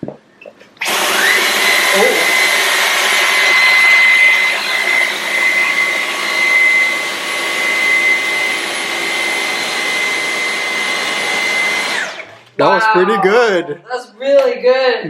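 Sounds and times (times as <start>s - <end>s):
vacuum cleaner whining: 0.8s - 12.7s.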